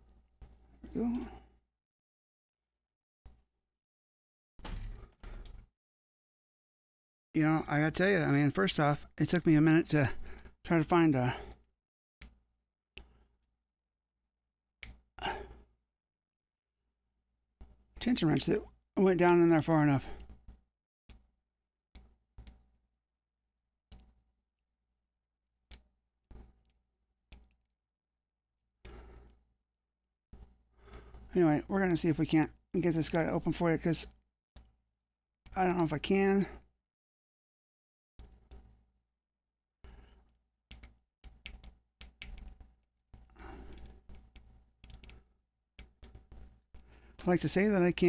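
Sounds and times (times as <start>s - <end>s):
lock picks clicking in a lock: 40.3s - 42.8s, 43.6s - 45.2s.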